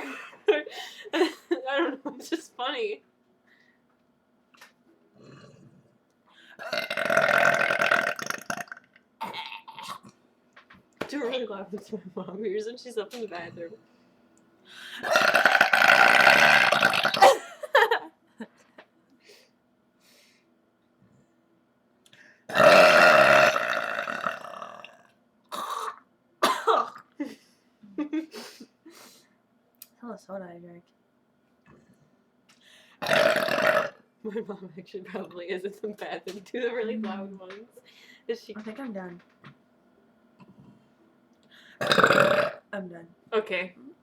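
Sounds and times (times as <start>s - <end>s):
person burping: 6.6s - 10.1s, 15.0s - 17.4s, 22.5s - 27.2s, 33.0s - 34.0s, 41.8s - 42.6s.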